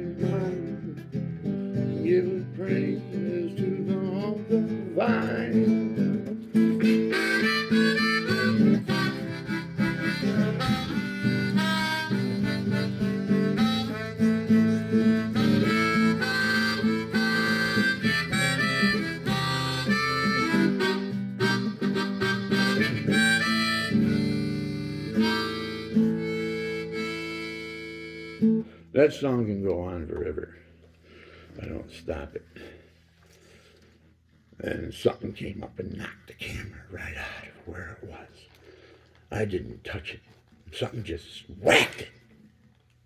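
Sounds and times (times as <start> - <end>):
harmonica melody: 0.0 - 29.0
strummed acoustic guitar: 0.0 - 30.3.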